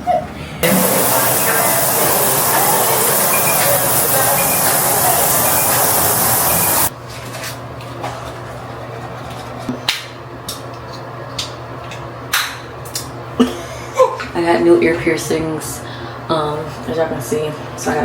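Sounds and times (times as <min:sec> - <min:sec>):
running water rushing: 0:00.6 - 0:06.9.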